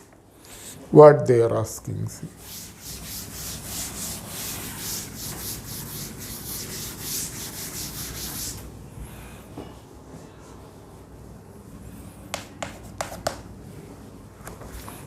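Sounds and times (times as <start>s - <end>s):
rhythmic rubbing on a surface: 2.4s - 8.6s.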